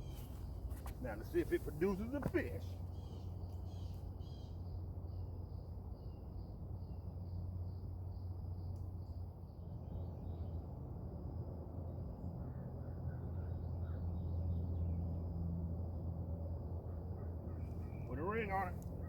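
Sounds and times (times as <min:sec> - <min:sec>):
insect chirping: 0:00.0 - 0:12.1
faint bird chirps: 0:02.9 - 0:04.6.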